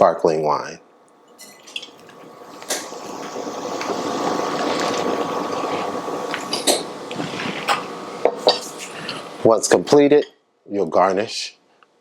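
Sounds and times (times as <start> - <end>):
sparkling wine pouring fizz: 1.2 - 9.5
glass clink: 1.3 - 2.0, 8.4 - 9.2.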